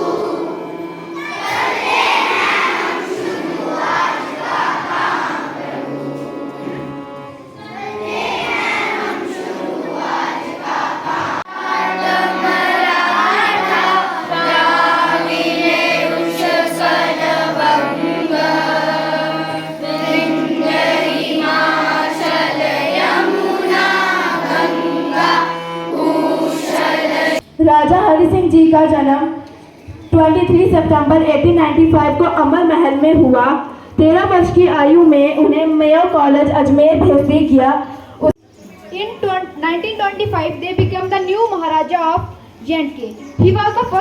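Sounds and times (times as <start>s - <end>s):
children singing in chorus: 0.0s - 27.4s
musical accompaniment: 0.0s - 27.4s.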